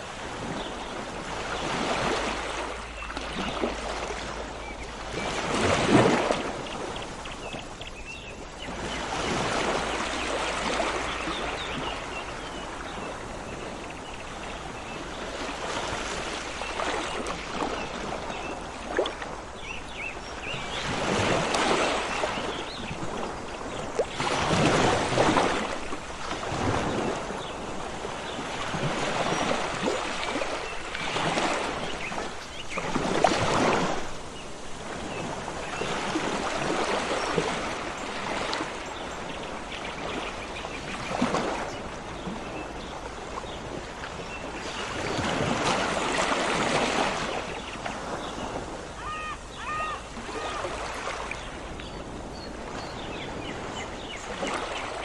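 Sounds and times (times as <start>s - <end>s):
sea waves washing ashore: 0.0s - 55.0s
bird calls: 26.8s - 55.0s.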